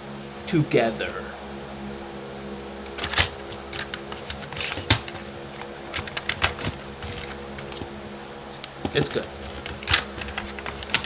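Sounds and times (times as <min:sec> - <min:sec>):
plastic clicks and knocks: 0:02.9 - 0:11.0.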